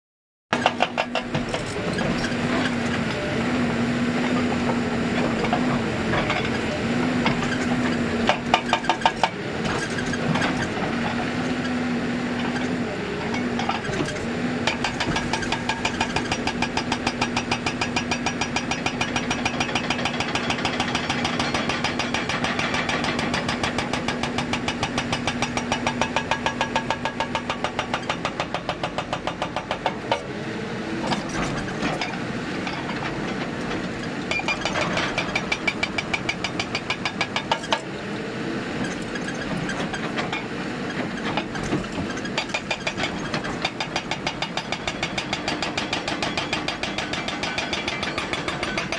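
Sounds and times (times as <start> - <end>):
hydraulic breaker hammering rock: 0.6 - 3.4, 4.1 - 11.6, 12.4 - 30.4, 31.0 - 38.0, 38.8 - 48.9
diesel engine running: 0.6 - 48.9.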